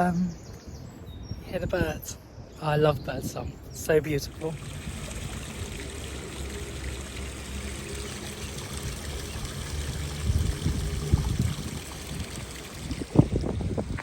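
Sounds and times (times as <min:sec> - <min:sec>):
faint birdsong: 0:00.0 - 0:11.0
wind buffeting microphone: 0:00.5 - 0:14.0.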